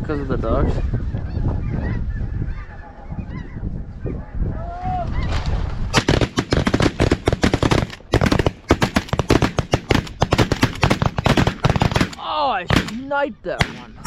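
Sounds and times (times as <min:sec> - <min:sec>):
geese honking: 0:00.9 - 0:05.3
shotgun fire volley: 0:05.9 - 0:13.0, 0:13.6 - 0:13.9.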